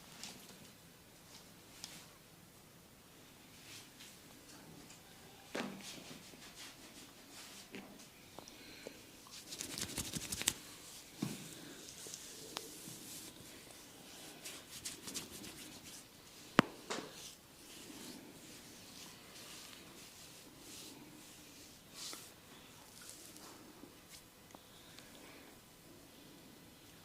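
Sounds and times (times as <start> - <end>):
fingers rubbing through hair: 9.3 - 10.7, 11.9 - 16.1.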